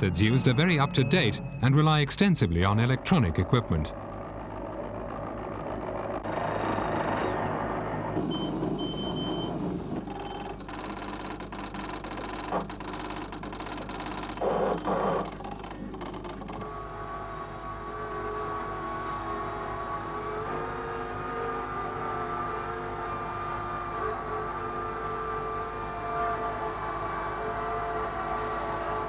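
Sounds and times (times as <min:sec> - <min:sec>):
high electronic beeps: 0:00.0 - 0:03.4, 0:08.2 - 0:10.6
mechanical whir: 0:03.9 - 0:24.3.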